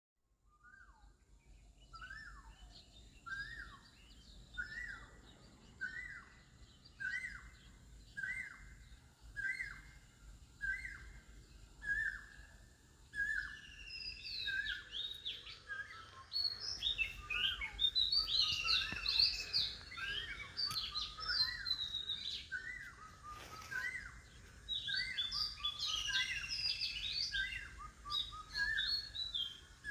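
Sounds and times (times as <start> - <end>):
birds singing varied song: 0.3 - 29.9.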